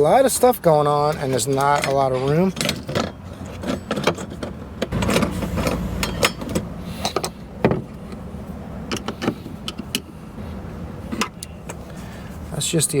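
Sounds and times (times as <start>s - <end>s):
clicks and knocks of hand work: 1.1s - 8.2s.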